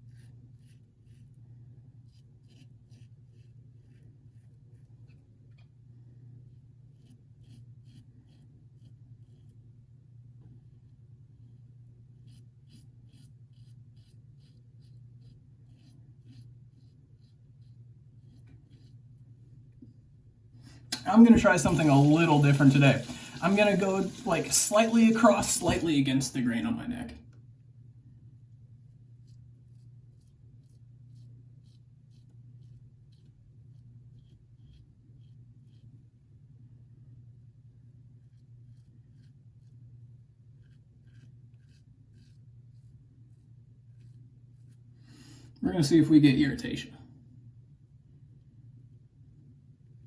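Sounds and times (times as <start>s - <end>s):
razor scraping stubble: 2.0s - 5.6s, 6.6s - 9.6s, 11.4s - 19.4s, 20.9s - 26.2s, 38.2s - 44.9s.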